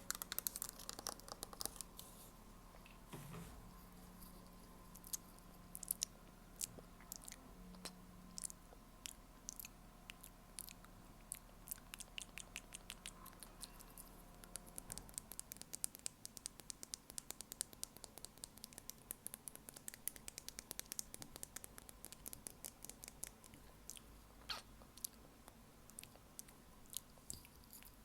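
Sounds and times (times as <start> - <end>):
rapid asmr clicking: 0.0 - 2.0, 11.7 - 23.6.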